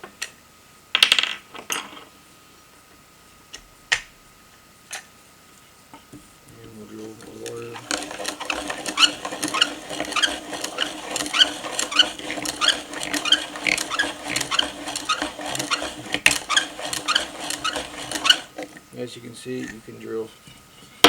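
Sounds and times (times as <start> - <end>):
whirr of turning gears: 6.7 - 20.0
hand drill squeaking chirp: 7.2 - 18.7.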